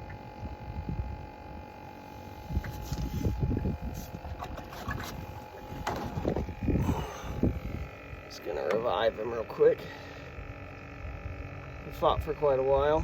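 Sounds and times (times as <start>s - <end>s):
faint steady hum: 0.0s - 13.0s
wind buffeting microphone: 0.2s - 1.6s, 2.4s - 8.3s.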